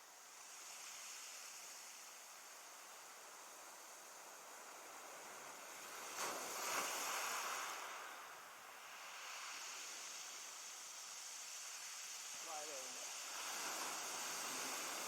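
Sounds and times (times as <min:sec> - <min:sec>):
steady wash of sea: 0:00.1 - 0:15.0
wave breaking on beach: 0:04.9 - 0:15.0.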